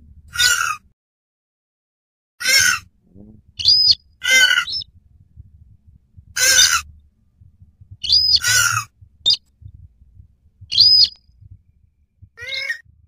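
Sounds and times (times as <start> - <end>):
harsh bird calls: 0.3 - 0.8, 2.4 - 4.9, 6.4 - 6.9, 8.0 - 9.5, 10.7 - 11.2, 12.4 - 12.8
high arching whistle: 10.7 - 11.2.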